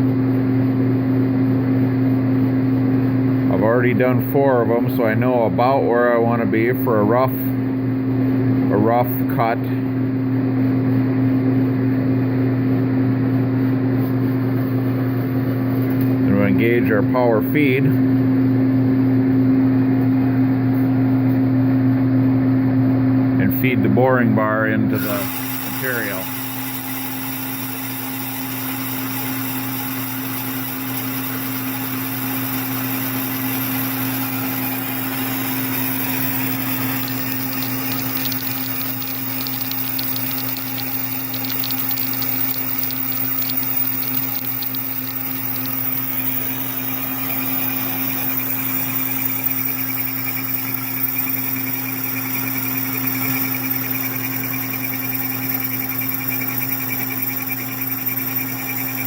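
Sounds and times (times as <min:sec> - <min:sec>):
lathe motor hum: 0:24.9 - 0:59.0
lathe cutting metal: 0:25.0 - 0:59.0.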